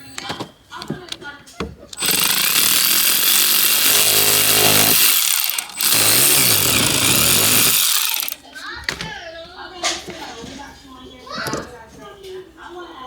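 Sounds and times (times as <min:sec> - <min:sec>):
handheld power tool running: 0:02.0 - 0:08.4.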